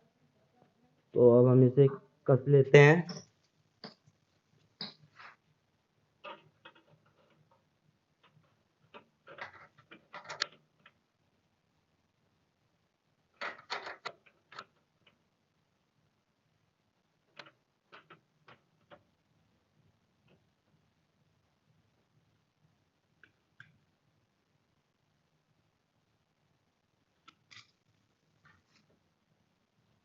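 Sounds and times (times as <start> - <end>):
screwdriver clicks and metallic rattles: 8.9 - 11.0.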